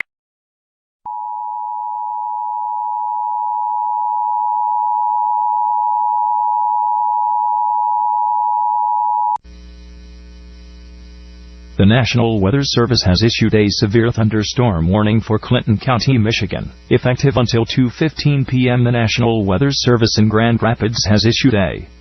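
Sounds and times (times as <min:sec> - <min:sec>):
low electrical buzz: 0:09.5 - 0:22.0.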